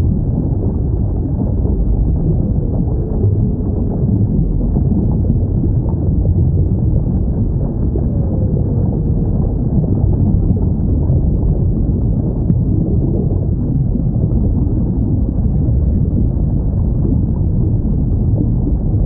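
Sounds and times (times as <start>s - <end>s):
low rumble of sea noise: 0.0s - 19.0s.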